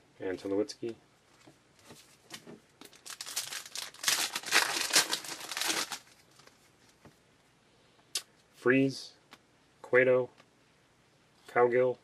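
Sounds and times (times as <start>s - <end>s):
foil wrapper crinkling and tearing: 2.8s - 6.6s.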